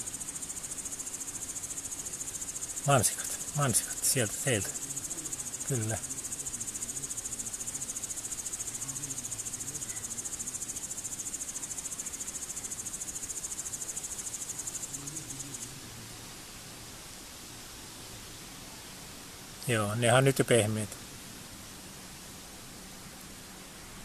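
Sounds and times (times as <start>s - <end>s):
insect chirring trill: 0.0s - 15.9s.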